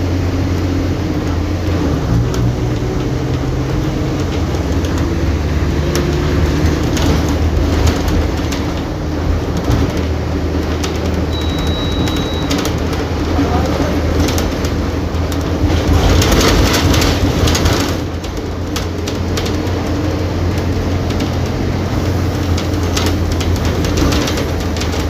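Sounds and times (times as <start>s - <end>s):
bus diesel engine running: 0.0s - 25.0s
short high-pitched beep: 11.3s - 12.7s
clicks and rattles: 14.1s - 21.6s, 22.4s - 25.0s.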